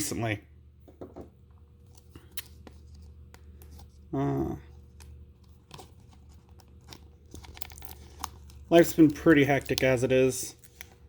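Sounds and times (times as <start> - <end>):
person humming: 4.1 - 4.7
scratching of plastic packaging: 5.6 - 11.0.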